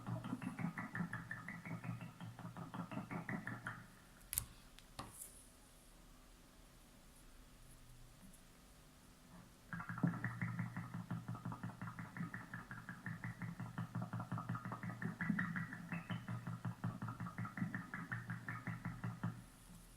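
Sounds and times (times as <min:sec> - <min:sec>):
rapid repeating chirps: 0:14.9 - 0:16.6.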